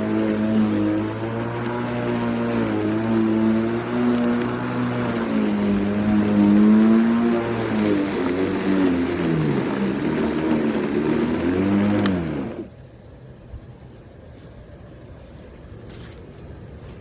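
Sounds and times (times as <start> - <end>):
electric lawn mower running: 0.0 - 16.4.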